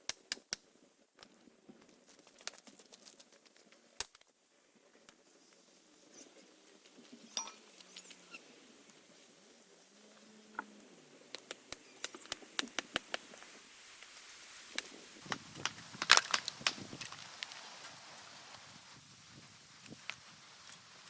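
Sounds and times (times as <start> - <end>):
kindling cracking and knocking: 14.7 - 17.7.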